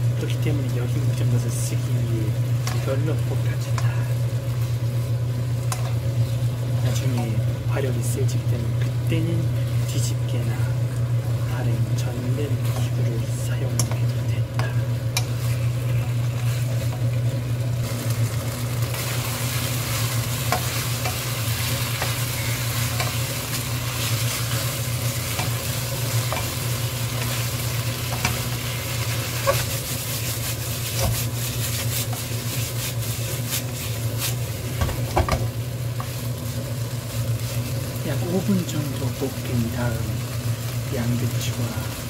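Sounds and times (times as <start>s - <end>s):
food sizzling in a wok: 0.0s - 42.0s
steady low hum: 0.0s - 42.0s
utensil scraping against pan: 13.7s - 17.1s, 18.9s - 34.5s.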